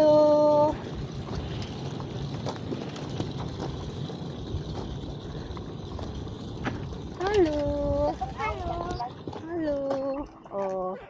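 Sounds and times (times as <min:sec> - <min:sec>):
trolley wheels rolling on pavement: 0:00.0 - 0:11.0.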